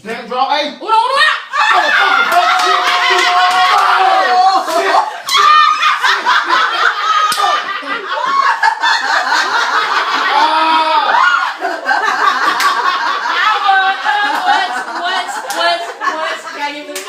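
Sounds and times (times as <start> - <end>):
people yelling and laughing: 0.8 - 17.0
sharp slaps: 7.2 - 7.7.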